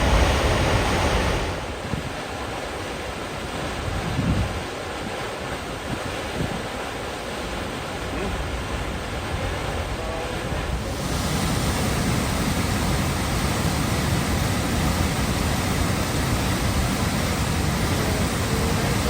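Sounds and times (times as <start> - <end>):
waterfall rushing: 4.6 - 19.0.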